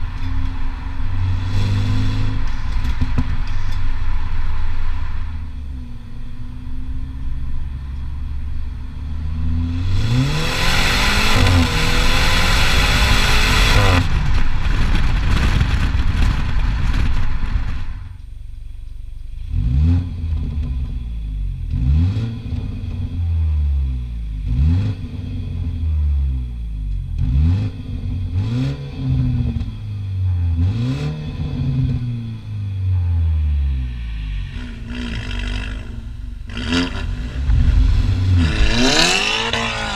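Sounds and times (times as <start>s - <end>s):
exhaust pops: 0.0s - 5.5s, 12.8s - 18.4s, 34.3s - 39.9s
car engine revving: 0.0s - 18.0s, 19.4s - 39.9s
loud rushing noise: 0.7s - 6.2s, 33.6s - 39.9s.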